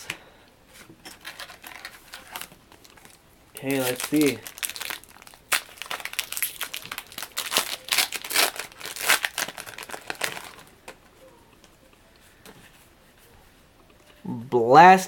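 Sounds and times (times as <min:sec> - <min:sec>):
foil wrapper crinkling and tearing: 0:01.1 - 0:11.0.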